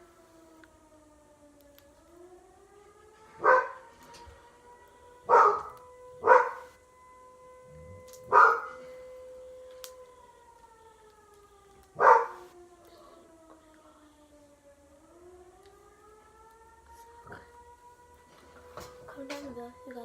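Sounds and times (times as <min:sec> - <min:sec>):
wailing tone: 0:03.2 - 0:10.7
dog barking: 0:03.4 - 0:03.8, 0:05.3 - 0:06.7, 0:08.3 - 0:08.8, 0:12.0 - 0:12.5.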